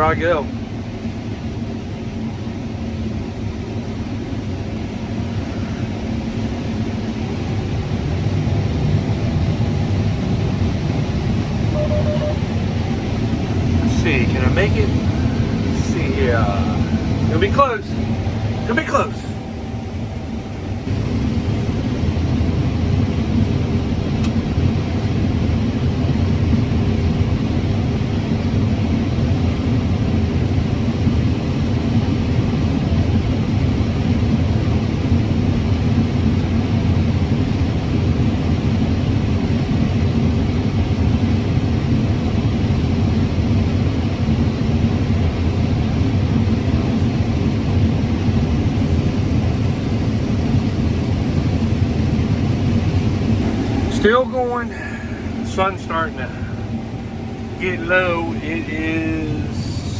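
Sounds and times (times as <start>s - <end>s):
combine harvester rumble: 3.6s - 34.4s, 43.8s - 59.9s.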